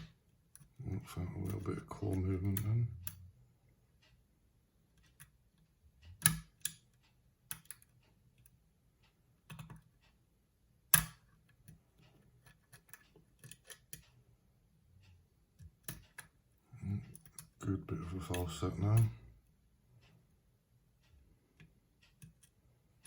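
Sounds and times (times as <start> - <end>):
lock pick clicking in padlock: 6.2 - 6.9, 10.9 - 11.4, 12.4 - 14.0.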